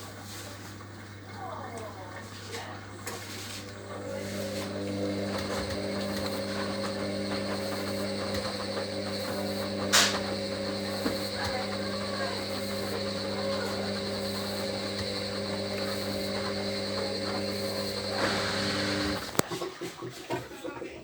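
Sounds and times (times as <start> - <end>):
washing machine humming: 0.0 - 19.5.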